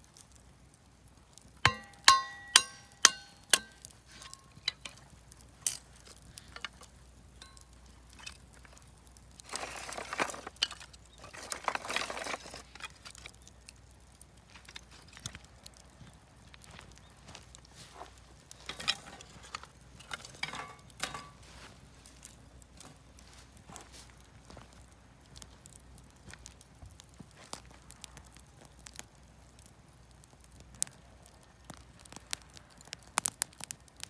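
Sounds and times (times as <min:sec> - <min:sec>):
hard objects clinking: 0:01.6 - 0:13.7, 0:18.0 - 0:21.6
rustling or scraping: 0:01.7 - 0:13.4, 0:17.3 - 0:24.8.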